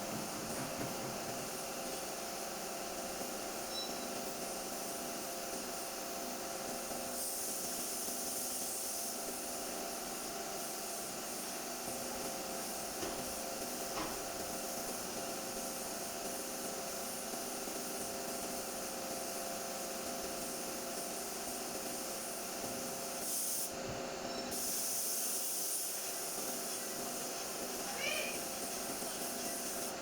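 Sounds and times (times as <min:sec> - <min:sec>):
spray gun air hiss: 0:00.0 - 0:23.8, 0:24.5 - 0:30.0.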